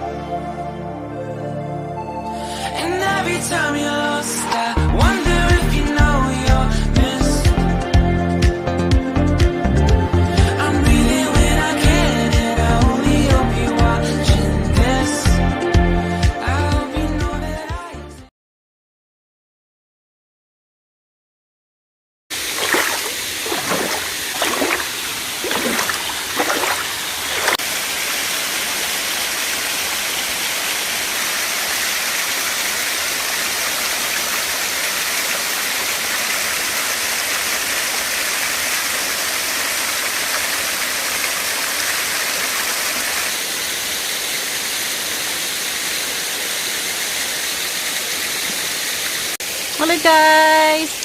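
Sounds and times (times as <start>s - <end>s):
waterfall pouring: 22.3s - 51.0s.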